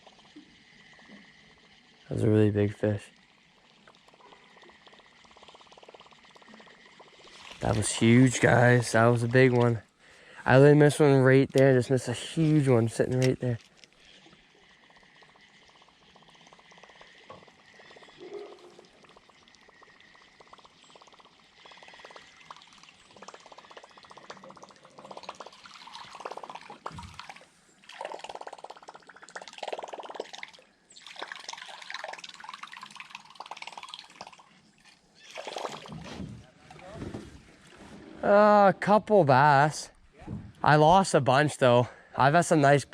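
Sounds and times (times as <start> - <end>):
water dripping and trickling: 0.0 - 36.9
faint clicks: 3.6 - 7.0.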